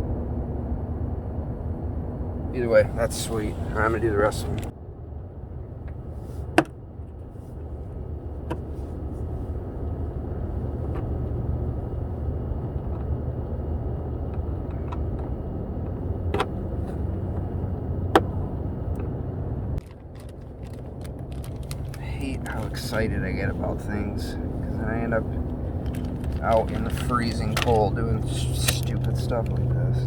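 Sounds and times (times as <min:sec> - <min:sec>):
vehicle engine rumbling: 0:00.0 - 0:30.0.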